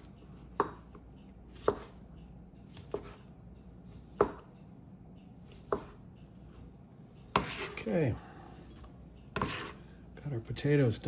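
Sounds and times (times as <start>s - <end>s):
knife chopping potatoes: 0.0s - 4.6s, 5.3s - 6.7s, 7.3s - 8.0s, 8.7s - 9.8s.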